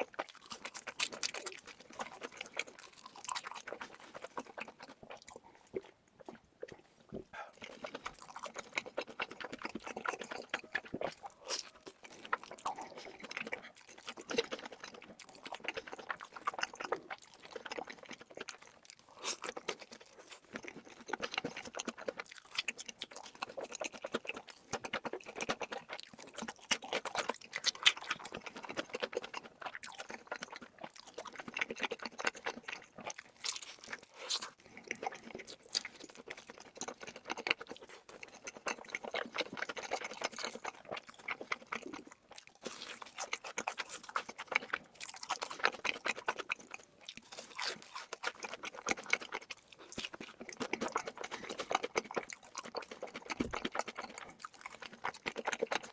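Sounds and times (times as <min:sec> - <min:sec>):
person chewing and crunching: 0:00.0 - 0:55.9.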